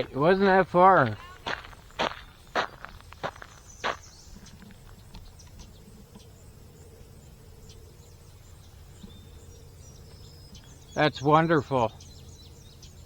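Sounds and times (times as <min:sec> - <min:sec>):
footstep: 0:00.0 - 0:06.3
insects buzzing faintly: 0:00.0 - 0:13.0.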